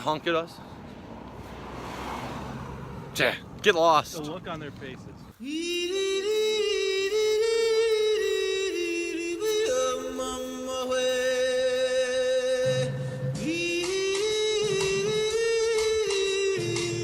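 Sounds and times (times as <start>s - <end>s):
person singing long notes: 5.4s - 17.0s.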